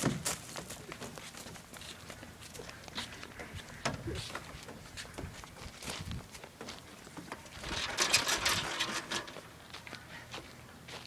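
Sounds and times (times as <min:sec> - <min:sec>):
footsteps on ground: 0:00.0 - 0:11.0.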